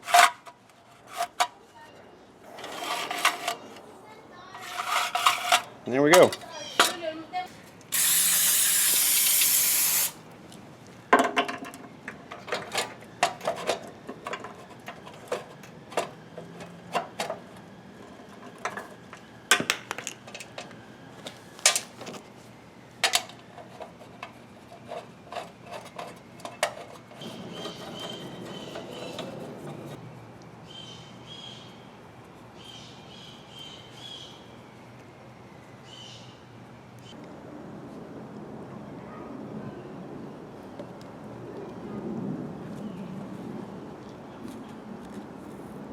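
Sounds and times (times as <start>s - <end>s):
tools clicking and clanking: 4.6s - 7.0s, 23.0s - 30.0s
loud spray hiss: 7.9s - 10.2s.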